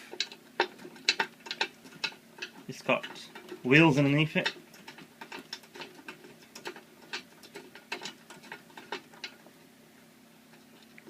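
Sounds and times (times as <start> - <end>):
mechanical clicks and ticks: 0.0 - 9.5.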